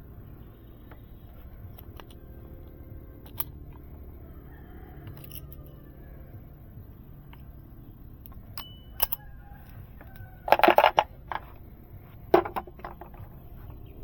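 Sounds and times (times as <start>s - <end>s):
sharp metallic clicks and clatter: 8.2s - 11.6s.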